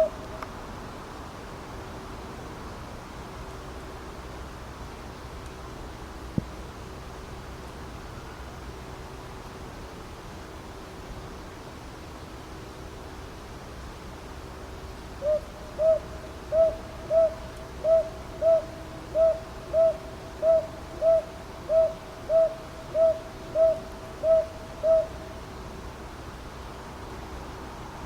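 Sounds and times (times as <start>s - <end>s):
owl hooting: 0.0s - 0.4s, 15.2s - 25.4s.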